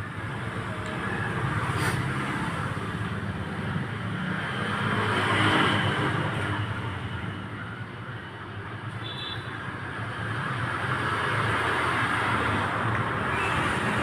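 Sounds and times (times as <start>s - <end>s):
low engine hum of traffic: 0.0s - 14.0s.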